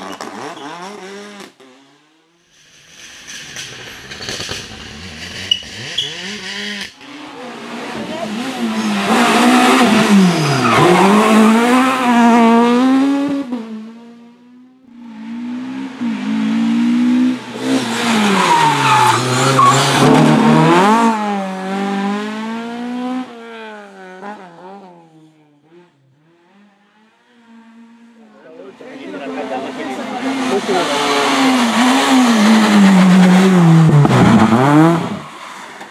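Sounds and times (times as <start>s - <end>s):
rally car engines revving: 0.0s - 35.9s
tyre squeal: 5.4s - 6.4s, 18.0s - 21.0s.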